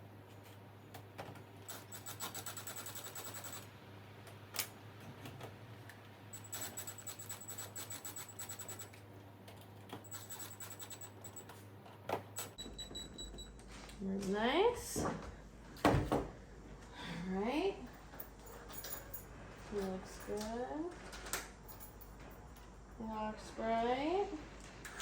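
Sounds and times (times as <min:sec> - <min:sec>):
screwdriver rapid clicking: 0:01.7 - 0:03.7, 0:06.4 - 0:08.9, 0:10.0 - 0:11.4.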